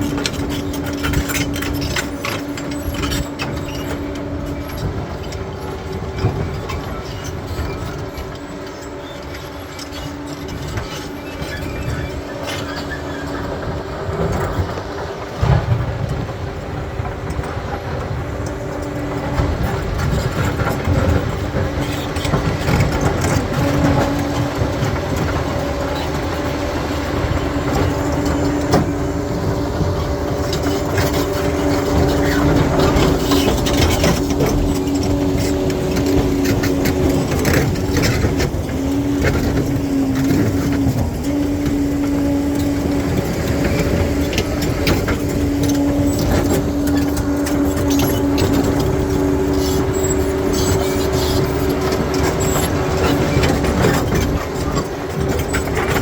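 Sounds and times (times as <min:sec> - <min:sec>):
diesel engine whining: 0:00.0 - 0:56.0
steel tracks rattling and clanking: 0:00.0 - 0:56.0.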